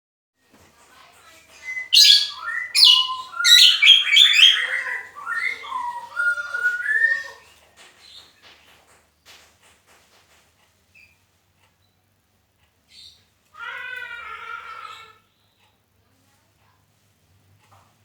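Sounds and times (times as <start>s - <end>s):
songbird chattering and whistling: 1.5s - 7.5s.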